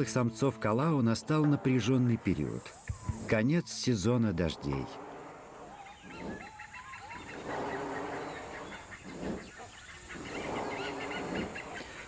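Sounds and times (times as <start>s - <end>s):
hornbills honking: 4.4s - 12.0s
chatter of higher bird calls: 5.6s - 12.0s.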